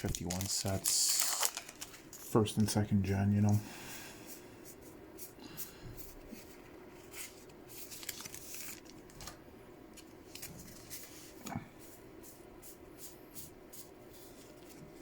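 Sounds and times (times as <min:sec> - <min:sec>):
cards and wrappers rustling: 0:00.0 - 0:02.9, 0:06.3 - 0:11.6.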